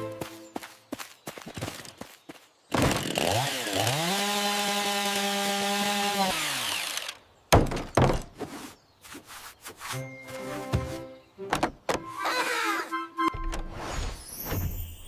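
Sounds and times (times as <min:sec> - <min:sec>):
electric saw cutting wood: 0:02.8 - 0:07.2.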